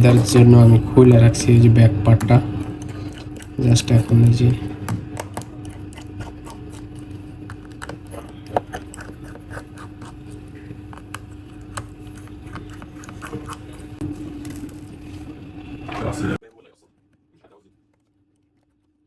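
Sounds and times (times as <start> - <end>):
steady low hum: 0.0 - 16.4
small tools clicking and scraping: 2.1 - 15.0.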